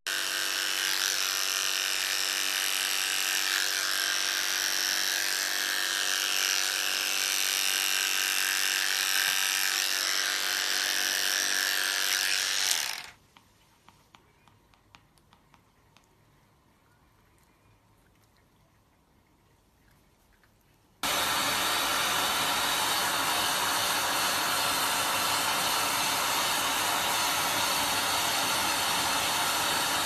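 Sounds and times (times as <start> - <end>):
small electric motor buzzing: 0.1 - 13.2, 21.0 - 30.0.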